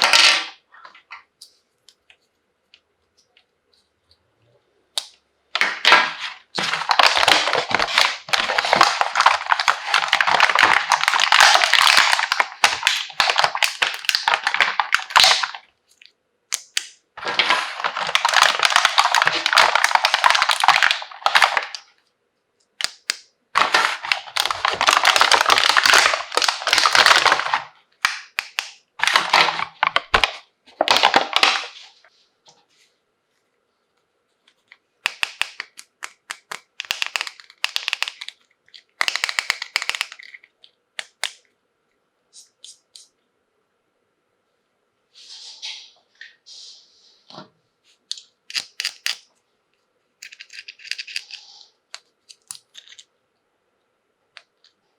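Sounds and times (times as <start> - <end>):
packaging crinkling: 5.6 - 15.6, 17.2 - 21.8, 22.8 - 32.0, 35.0 - 40.4, 50.2 - 53.1.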